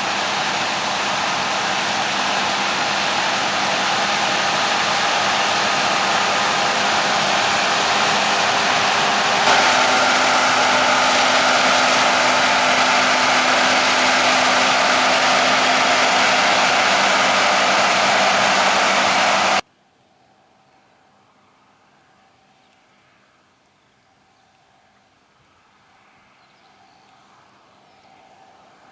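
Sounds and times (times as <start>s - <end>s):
farm machinery engine hum: 0.0s - 19.6s.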